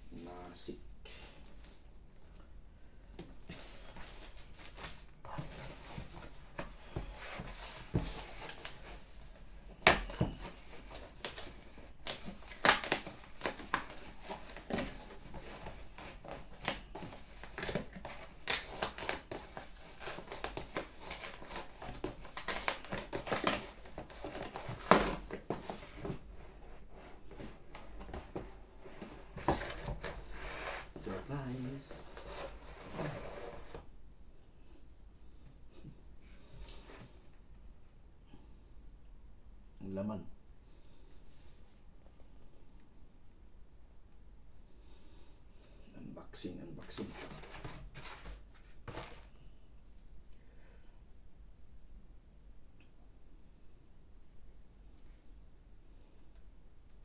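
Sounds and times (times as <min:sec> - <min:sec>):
plastic packaging crinkling and tearing: 0:10.8 - 0:25.4.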